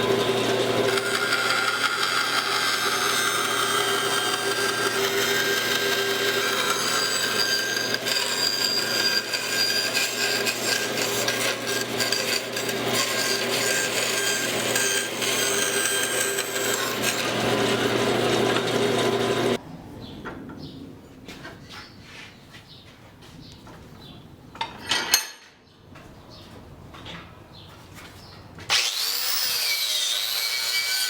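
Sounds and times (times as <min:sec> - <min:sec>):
power grinder grinding steel: 0:00.0 - 0:19.6, 0:28.7 - 0:31.0.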